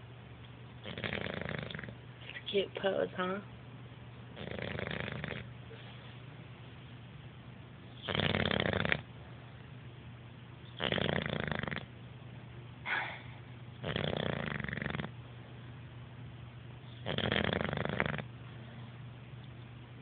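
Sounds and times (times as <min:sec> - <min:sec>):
dog snoring: 0:00.8 - 0:02.0, 0:04.3 - 0:05.9, 0:07.9 - 0:09.1, 0:10.6 - 0:12.0, 0:12.9 - 0:15.2, 0:16.8 - 0:19.0
faint breath: 0:12.8 - 0:13.5.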